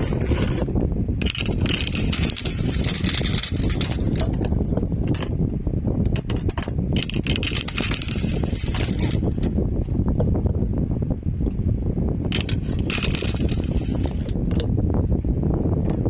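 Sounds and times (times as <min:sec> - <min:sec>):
marbles rolling on a track: 0:00.0 - 0:05.3, 0:06.1 - 0:09.5, 0:12.3 - 0:14.6
marbles clicking: 0:01.2 - 0:05.3, 0:06.1 - 0:09.5, 0:12.3 - 0:14.6.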